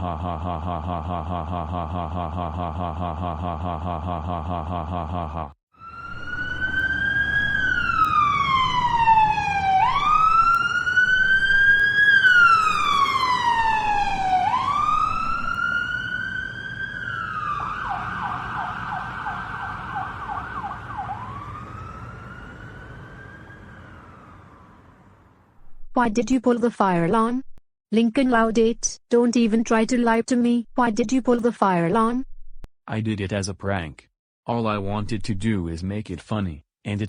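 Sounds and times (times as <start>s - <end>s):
electronic siren wailing and yelping: 5.8s - 24.9s.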